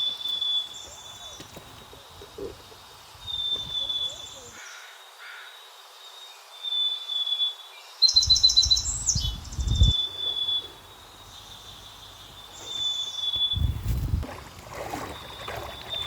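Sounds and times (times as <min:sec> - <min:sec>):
bird chirps with gliding call: 0:08.1 - 0:13.7.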